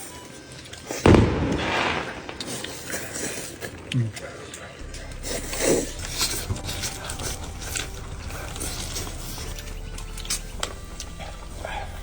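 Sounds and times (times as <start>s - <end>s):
steady low hum: 4.8s - 12.0s.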